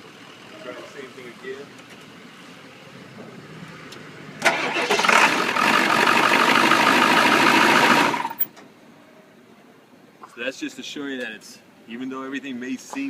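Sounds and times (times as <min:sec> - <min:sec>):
starter motor cranking diesel engine: 0:04.4 - 0:08.5.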